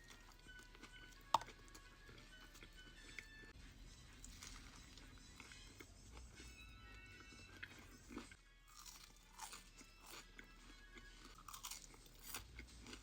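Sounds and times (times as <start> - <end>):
person chewing crunchy food: 0.0 - 13.0.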